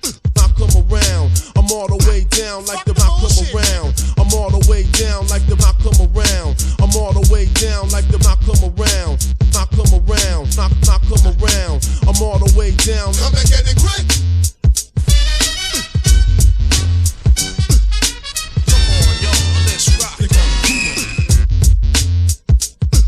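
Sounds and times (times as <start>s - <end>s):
rapping over a beat: 0.0s - 14.3s, 18.6s - 21.3s.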